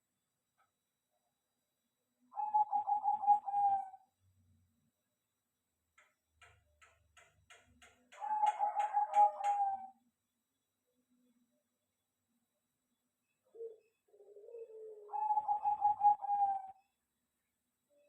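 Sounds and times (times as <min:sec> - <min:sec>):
dove cooing: 0:02.3 - 0:04.1, 0:08.1 - 0:10.0, 0:13.5 - 0:16.8.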